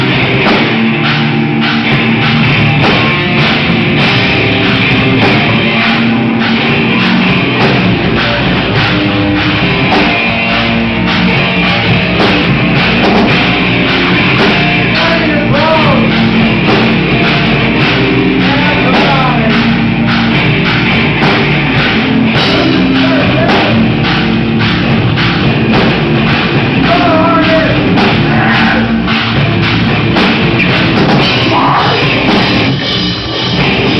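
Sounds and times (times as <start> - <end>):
live rock band playing: 0.0 - 33.9.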